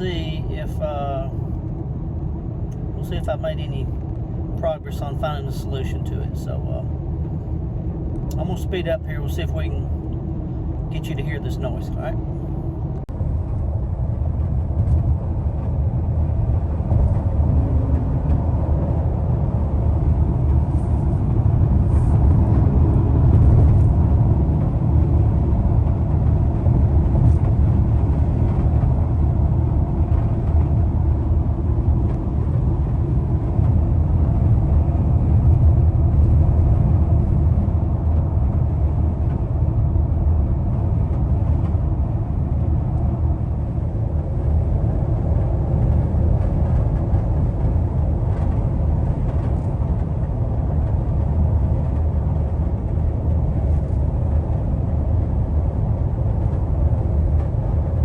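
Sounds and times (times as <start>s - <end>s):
car cabin road and wind rumble: 0.0s - 58.0s.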